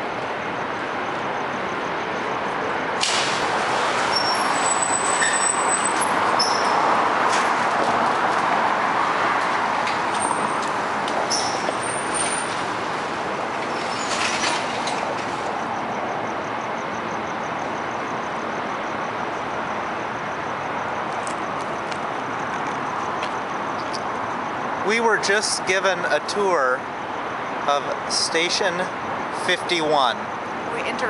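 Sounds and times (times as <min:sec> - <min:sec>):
street traffic: 0:00.0 - 0:31.0
high squeaks: 0:04.1 - 0:06.9, 0:11.3 - 0:12.6, 0:13.6 - 0:14.9.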